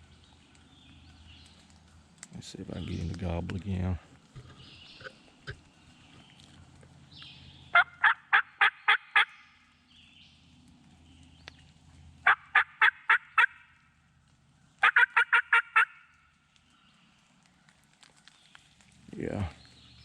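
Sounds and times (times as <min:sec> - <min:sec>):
turkey call yelping: 0:07.7 - 0:09.4, 0:12.2 - 0:13.7, 0:14.8 - 0:16.1.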